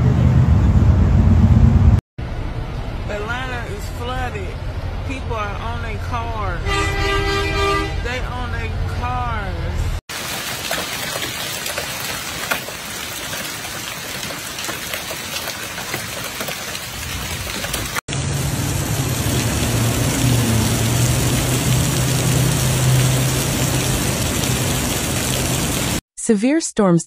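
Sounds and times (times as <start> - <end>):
heavy rain falling: 10.1 - 26.0.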